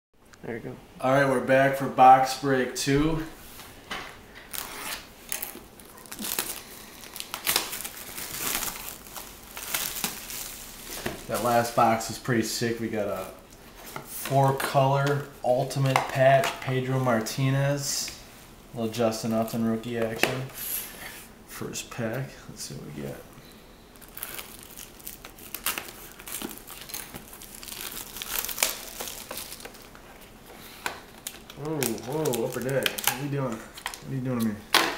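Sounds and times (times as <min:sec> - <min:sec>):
cardboard packaging crinkling: 0:04.5 - 0:12.2, 0:24.0 - 0:34.6.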